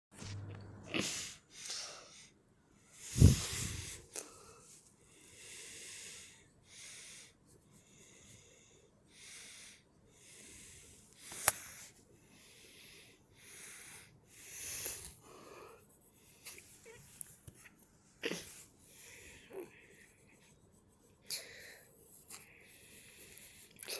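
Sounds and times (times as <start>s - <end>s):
person breathing heavily: 3.0s - 16.3s.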